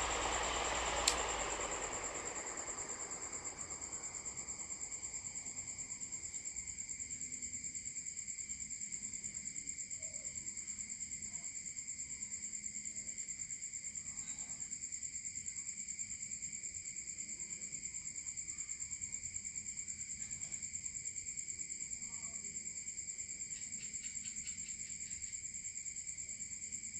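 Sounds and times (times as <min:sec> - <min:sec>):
small motor high-pitched whine: 0:00.0 - 0:05.9.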